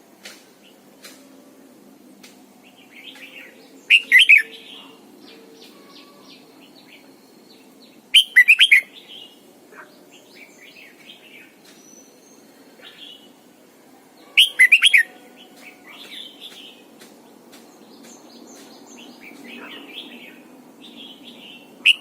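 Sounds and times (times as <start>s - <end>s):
bird warbled song phrases: 2.6s - 13.4s, 14.2s - 22.0s
faint bird chirps: 3.1s - 13.2s, 14.2s - 16.5s.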